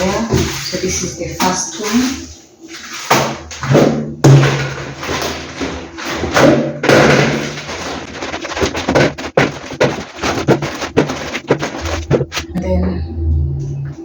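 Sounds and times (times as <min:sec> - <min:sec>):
groceries thumping and knocking: 0:03.0 - 0:12.6.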